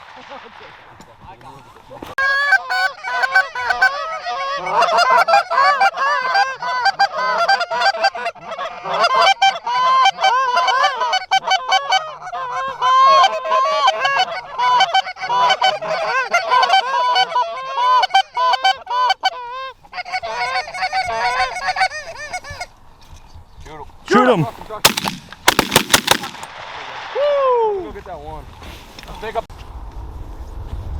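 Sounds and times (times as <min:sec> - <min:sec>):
geese honking and clucking: 0:01.7 - 0:22.8.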